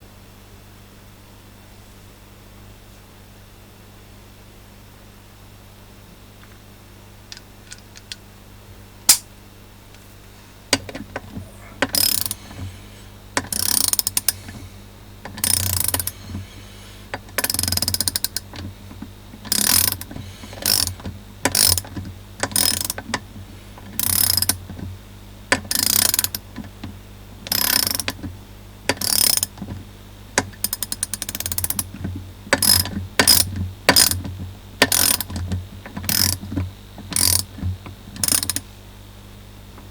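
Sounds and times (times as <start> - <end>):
ratchet handle clicking: 11.8 - 12.4, 13.4 - 14.4, 15.3 - 16.2, 17.4 - 18.6, 19.5 - 23.0, 24.0 - 24.6, 25.5 - 26.4, 27.4 - 28.2, 28.9 - 29.5, 30.4 - 31.9, 32.6 - 34.2, 34.8 - 35.4, 36.0 - 36.4, 37.1 - 37.5, 38.2 - 38.6.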